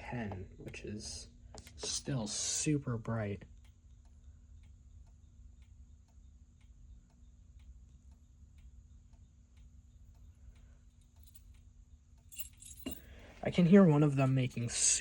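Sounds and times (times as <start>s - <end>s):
faint ticks: 3.4s - 12.7s.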